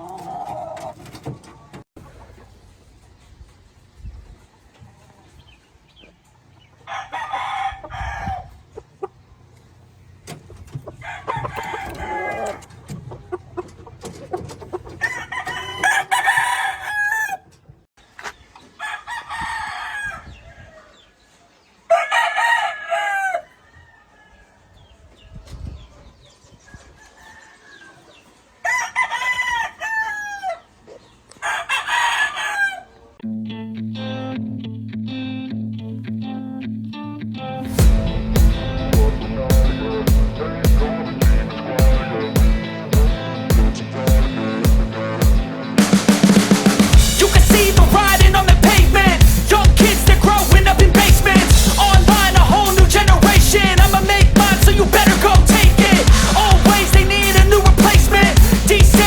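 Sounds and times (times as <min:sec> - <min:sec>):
roosters crowing: 0:00.0 - 0:01.8, 0:06.7 - 0:09.0, 0:10.8 - 0:17.7, 0:18.7 - 0:25.0, 0:26.6 - 0:33.2, 0:38.8 - 0:59.0.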